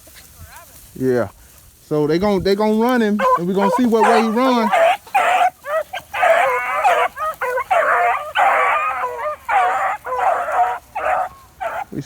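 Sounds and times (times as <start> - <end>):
dogs baying: 2.9 - 12.0.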